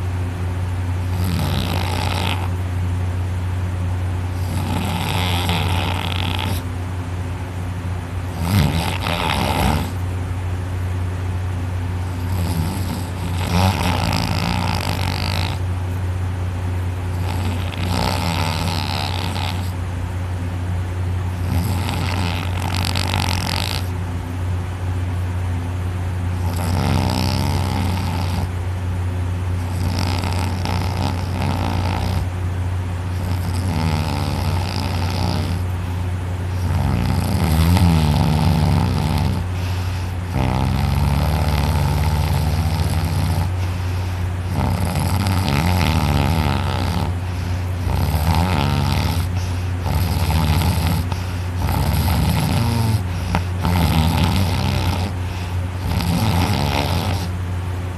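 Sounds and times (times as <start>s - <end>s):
steady low hum: 0.0s - 57.9s
person snoring heavily: 1.0s - 2.6s, 4.3s - 6.7s, 8.3s - 10.0s, 12.0s - 15.7s, 17.1s - 19.8s, 21.4s - 23.9s, 26.3s - 28.5s, 29.6s - 32.3s, 33.1s - 35.7s, 36.5s - 57.4s.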